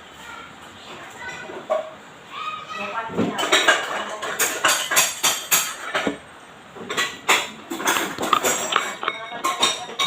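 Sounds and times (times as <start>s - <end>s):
spoon scraping a bowl: 6.9s - 10.0s.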